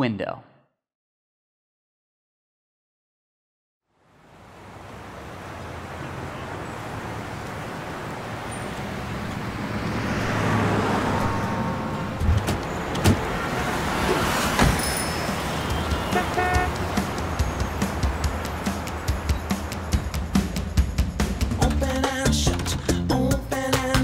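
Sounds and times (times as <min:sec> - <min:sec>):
rushing noise: 0:04.0 - 0:21.6.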